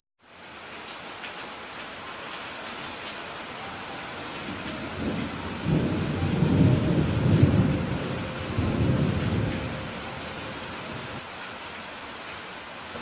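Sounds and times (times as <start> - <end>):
steady rain: 0.2 - 13.0
thunder rolling: 4.0 - 11.2.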